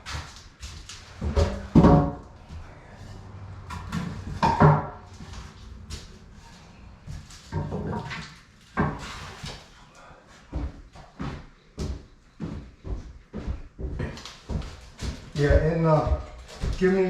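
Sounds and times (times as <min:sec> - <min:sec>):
demolition knocks and clatters: 0:00.0 - 0:09.7.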